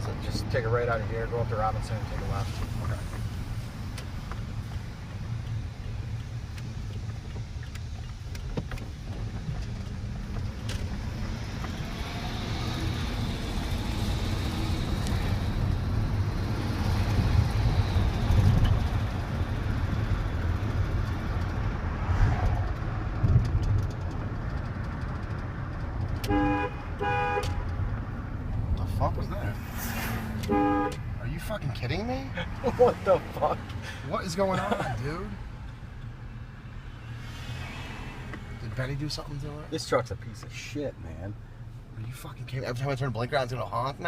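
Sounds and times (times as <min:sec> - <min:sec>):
truck engine and road noise: 0:00.0 - 0:44.0
car horn honking: 0:26.2 - 0:27.7, 0:30.4 - 0:31.1.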